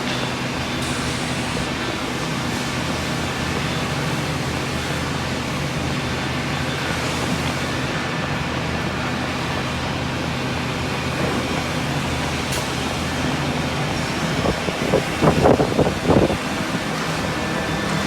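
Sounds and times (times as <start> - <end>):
milling machine motor hum: 9.7 - 18.0.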